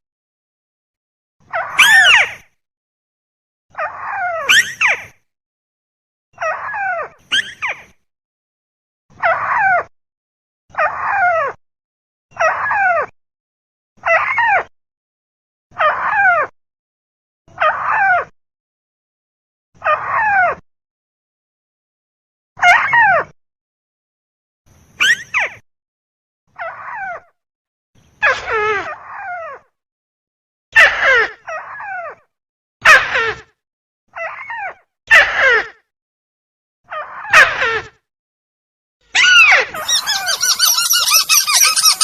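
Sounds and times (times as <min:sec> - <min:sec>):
harsh descending bird call: 0:39.8 - 0:42.0.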